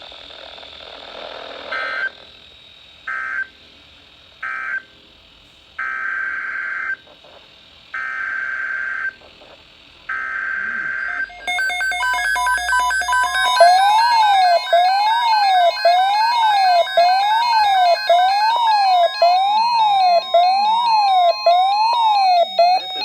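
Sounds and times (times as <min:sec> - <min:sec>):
synthesized siren tone: 0:10.6 - 0:23.0
stepped beeping tones: 0:11.0 - 0:23.0
steady high tone: 0:11.1 - 0:23.0.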